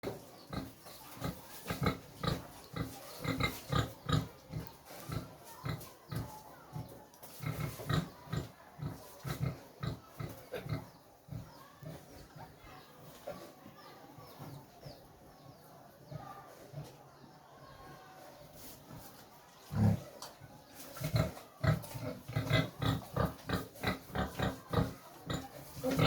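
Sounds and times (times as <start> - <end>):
pig grunting: 21.0 - 26.0.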